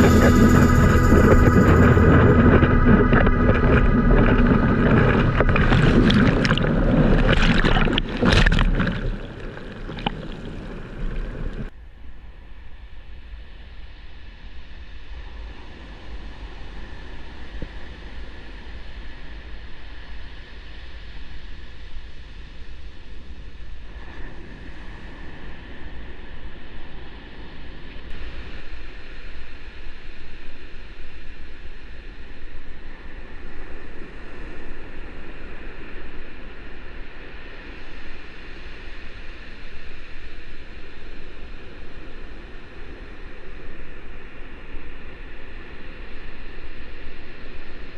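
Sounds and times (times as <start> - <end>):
ocean surf rushing: 0.0 - 8.0.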